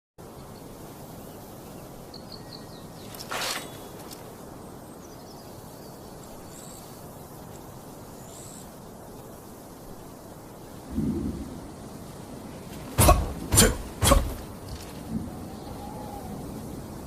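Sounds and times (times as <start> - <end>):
steady background hiss: 0.2 - 17.0
faint bird chirps: 0.4 - 8.8, 14.7 - 16.8.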